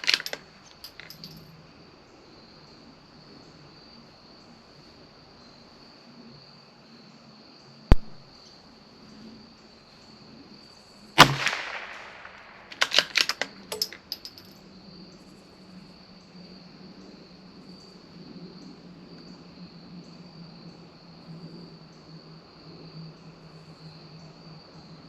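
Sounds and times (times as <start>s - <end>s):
rifle bolt clicking: 0.0s - 1.4s, 7.9s - 8.2s, 11.2s - 14.5s
crickets chirping: 0.0s - 25.0s
rifle shot: 7.9s - 8.2s, 11.2s - 13.6s.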